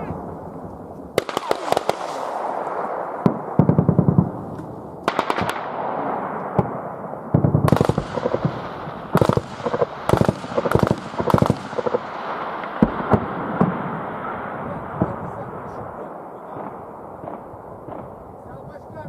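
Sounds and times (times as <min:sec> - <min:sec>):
automatic gunfire bursts: 0:01.2 - 0:02.2, 0:05.1 - 0:05.8, 0:07.4 - 0:13.7.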